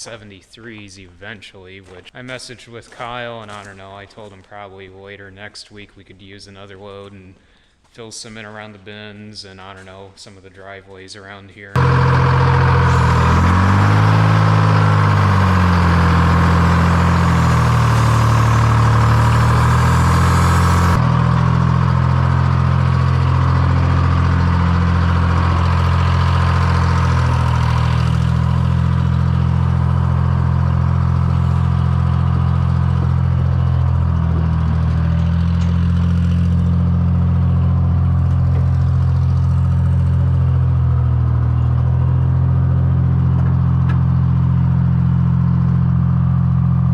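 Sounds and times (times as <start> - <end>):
vehicle engine running loudly: 11.8 - 46.9.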